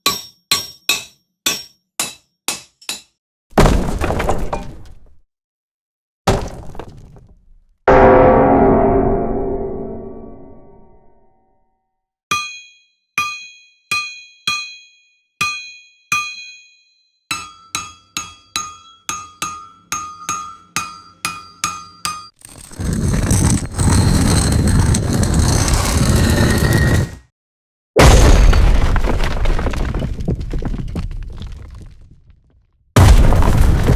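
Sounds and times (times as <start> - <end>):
hammer striking metal: 0.1 - 3.1, 7.9 - 10.9, 12.3 - 22.4.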